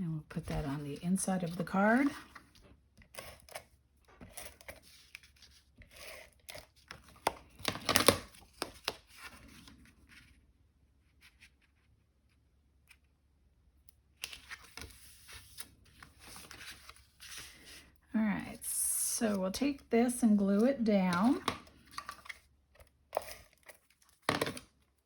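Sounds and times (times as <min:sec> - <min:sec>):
paper rustling and scraping: 0:00.4 - 0:10.4, 0:14.2 - 0:18.0, 0:21.1 - 0:22.5, 0:23.1 - 0:24.6.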